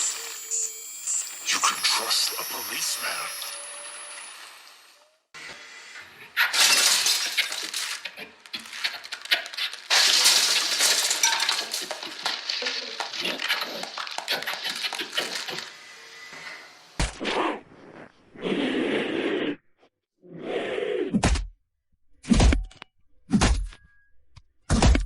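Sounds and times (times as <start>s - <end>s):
clattering and clinking: 6.5s - 15.7s.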